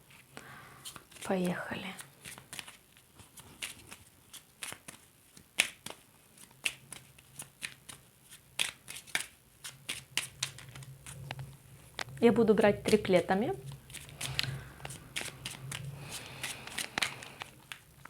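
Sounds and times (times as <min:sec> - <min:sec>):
card clicks and slaps: 0:04.6 - 0:10.9, 0:13.9 - 0:17.8.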